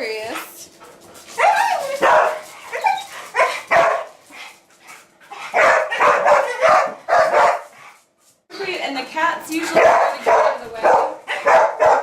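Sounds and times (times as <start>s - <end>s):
dog barking: 1.4s - 4.2s, 5.3s - 7.8s, 9.7s - 12.0s.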